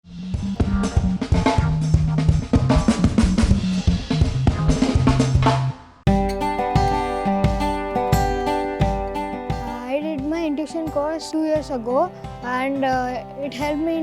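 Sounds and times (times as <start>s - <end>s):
drum beat with bass line: 0.0s - 14.0s
tune with held notes: 6.1s - 11.8s.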